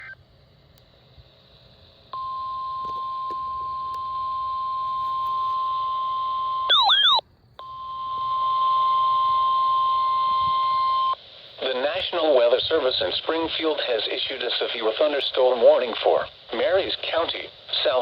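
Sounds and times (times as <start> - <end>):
faint radio hiss: 0.0 - 18.0
steady alarm tone: 2.2 - 11.2.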